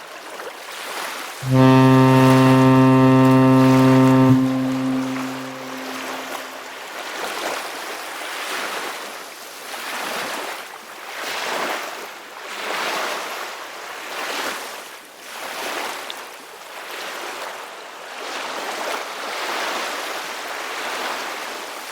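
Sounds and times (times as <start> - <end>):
ship's horn: 1.4 - 6.8.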